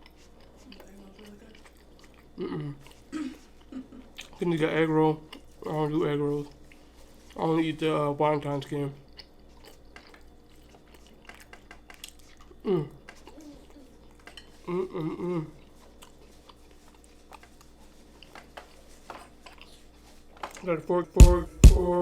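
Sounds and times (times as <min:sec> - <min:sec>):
person chewing food: 0:00.0 - 0:07.7, 0:08.3 - 0:20.6
short hum-like vocal sound: 0:02.4 - 0:04.5, 0:12.6 - 0:14.0, 0:14.6 - 0:15.8, 0:20.9 - 0:22.0.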